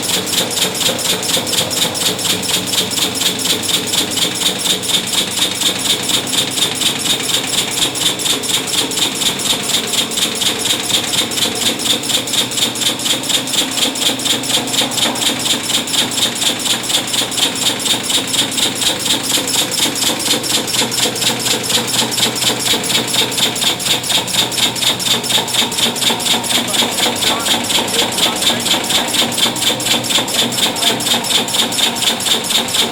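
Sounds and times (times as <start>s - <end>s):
rapid weld pulses: 0.0s - 32.9s
steady high-pitched hum: 10.1s - 32.9s.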